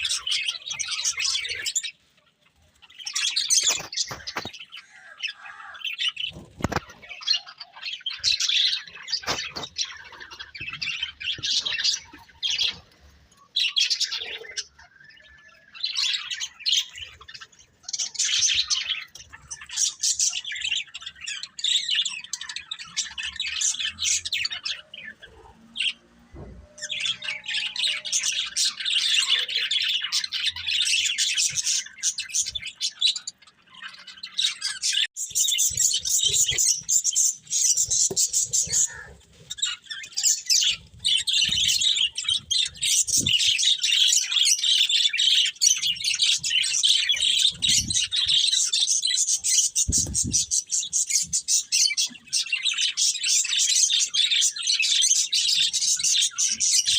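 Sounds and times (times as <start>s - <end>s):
budgerigars chattering: 26.8s - 56.9s.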